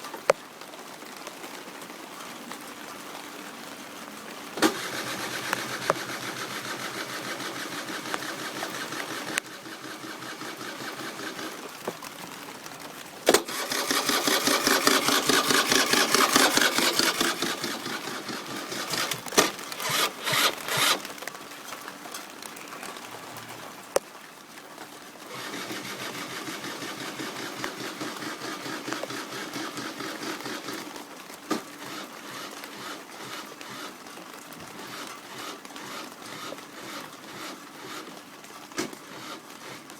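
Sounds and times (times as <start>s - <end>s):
scooter engine cranking: 4.6s - 12.1s, 13.2s - 21.3s, 25.3s - 33.9s
sharp clicks: 4.6s - 12.1s, 13.3s - 23.0s, 25.3s - 31.7s.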